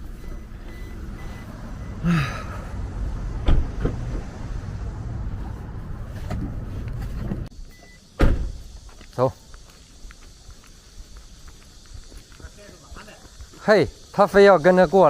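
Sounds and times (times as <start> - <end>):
motor vehicle rumble: 0.0 - 8.9.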